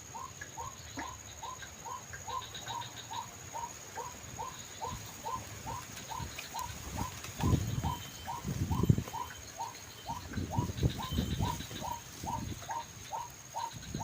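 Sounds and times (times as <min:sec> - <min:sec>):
waterhen calling: 0:00.0 - 0:14.0
wind buffeting microphone: 0:04.8 - 0:14.0.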